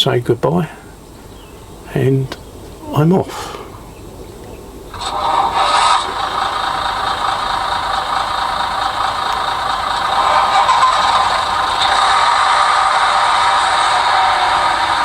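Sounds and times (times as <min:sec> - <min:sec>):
diesel engine through small speaker: 0:04.9 - 0:15.0.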